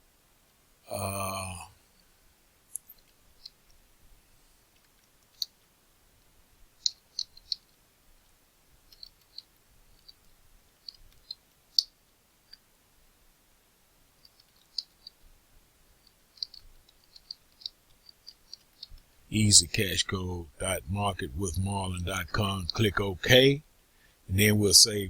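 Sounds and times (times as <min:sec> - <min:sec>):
mouse and keyboard clicks: 0:04.7 - 0:05.7, 0:06.8 - 0:07.8, 0:08.9 - 0:12.6, 0:14.2 - 0:15.3, 0:16.0 - 0:19.1.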